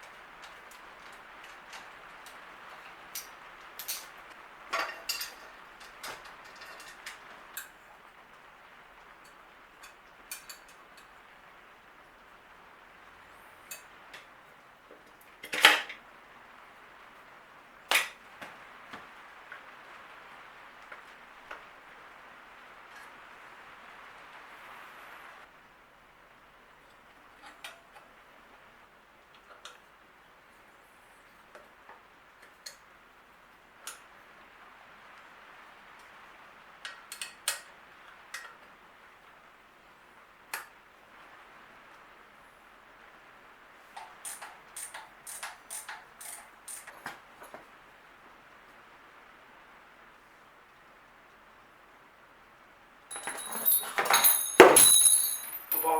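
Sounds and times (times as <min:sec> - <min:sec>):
metal bike parts clanking: 0:04.8 - 0:07.7, 0:53.1 - 0:55.9
metal tools clicking and clinking: 0:04.8 - 0:07.7, 0:53.1 - 0:55.9.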